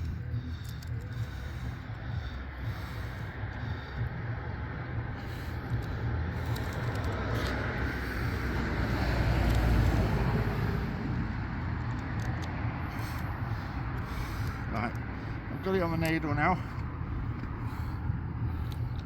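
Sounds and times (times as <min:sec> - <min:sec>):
hand tools clicking: 0:00.0 - 0:01.3, 0:05.5 - 0:09.8, 0:11.7 - 0:15.1
low traffic rumble: 0:00.0 - 0:19.0
vehicle passing: 0:00.0 - 0:19.0.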